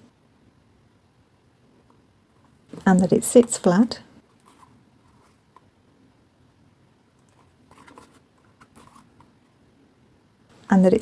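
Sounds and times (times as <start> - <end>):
card rustling: 4.3 - 5.7, 7.2 - 9.4.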